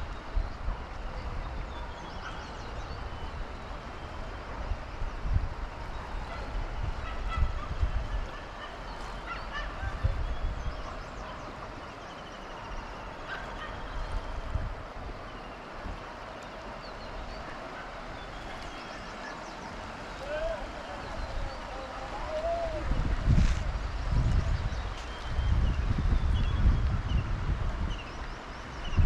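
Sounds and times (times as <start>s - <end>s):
river rushing: 0.0s - 28.9s
wind rumbling on microphone: 0.0s - 29.0s
birds calling: 5.7s - 22.6s.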